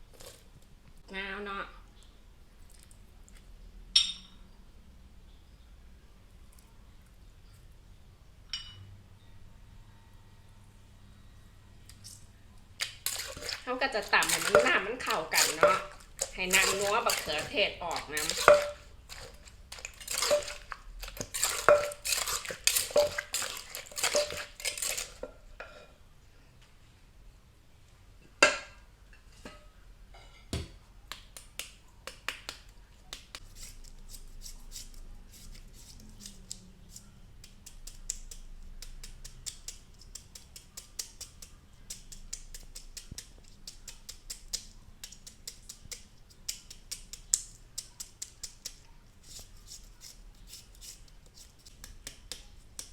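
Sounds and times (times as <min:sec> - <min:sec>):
pestle pounding in mortar: 0:13.0 - 0:25.2.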